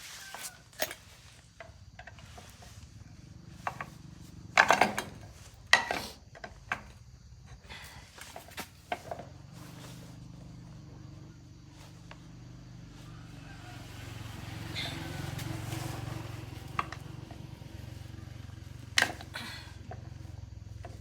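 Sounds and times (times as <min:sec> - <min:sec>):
motorbike engine running: 0:01.7 - 0:05.8, 0:09.2 - 0:21.0.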